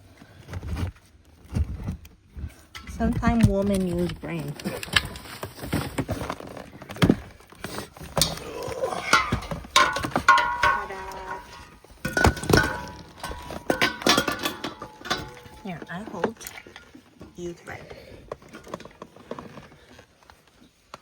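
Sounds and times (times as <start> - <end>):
metallic clinks: 8.2 - 15.9.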